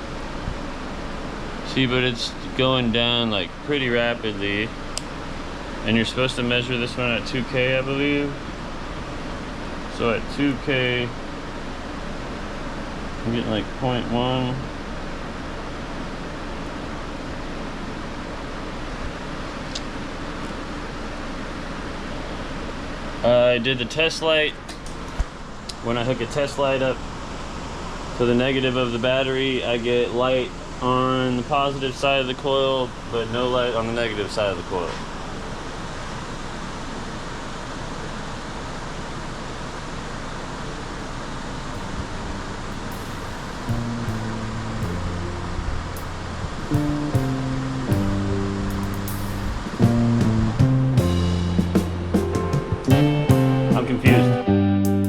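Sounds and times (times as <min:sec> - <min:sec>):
fan running: 0:00.0 - 0:55.0
steady rushing noise: 0:38.7 - 0:54.2
faint music tones: 0:41.0 - 0:55.0.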